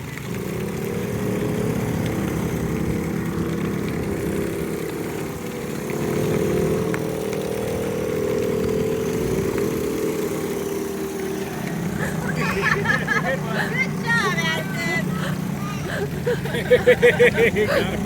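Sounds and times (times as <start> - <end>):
small boat engines droning: 0.0 - 18.0.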